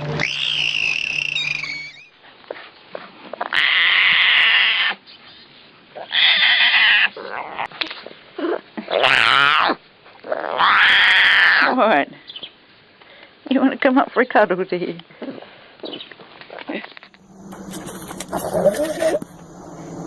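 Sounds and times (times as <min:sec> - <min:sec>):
animal call: 0:00.0 - 0:02.2, 0:17.7 - 0:19.4
cat yowling: 0:03.5 - 0:05.0, 0:06.0 - 0:07.7, 0:09.0 - 0:09.8, 0:10.4 - 0:11.8, 0:18.3 - 0:19.3.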